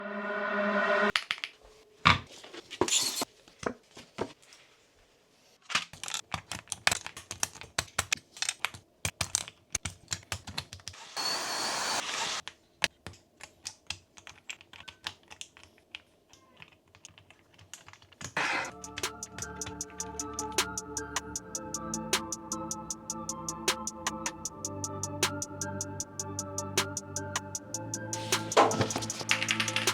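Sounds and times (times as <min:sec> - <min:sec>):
keyboard keycaps clicking: 0:06.3 - 0:11.0, 0:12.9 - 0:20.0, 0:28.6 - 0:29.9.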